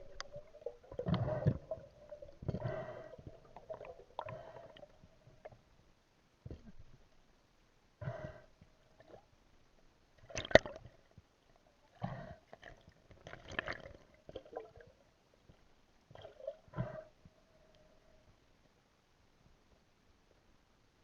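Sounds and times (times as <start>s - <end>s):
water splashing and gurgling: 0.0s - 5.4s, 10.2s - 11.0s, 12.6s - 15.0s.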